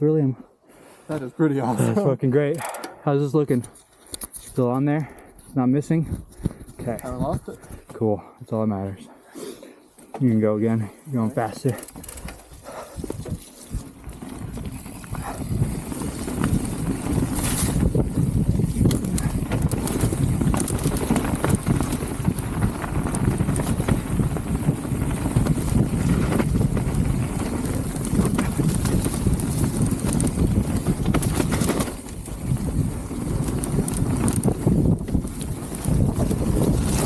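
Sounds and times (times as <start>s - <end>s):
tyres rumbling on dirt trail: 6.0s - 8.8s, 10.1s - 37.0s
bike knocks and rattles: 11.4s - 37.0s
wind on microphone: 12.0s - 37.0s.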